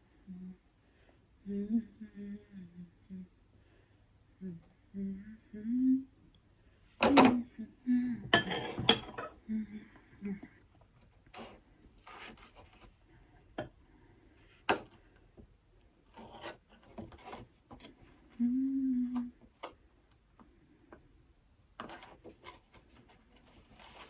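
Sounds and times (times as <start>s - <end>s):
person humming: 0.0s - 0.7s, 1.4s - 3.4s, 4.4s - 6.2s, 7.0s - 8.3s, 9.4s - 10.6s, 18.3s - 19.4s.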